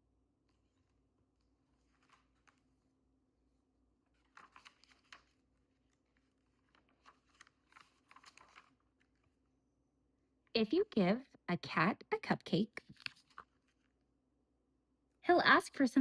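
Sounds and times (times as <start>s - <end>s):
faint clicks and rustles: 0.4s - 3.0s, 4.0s - 9.5s, 12.8s - 14.0s.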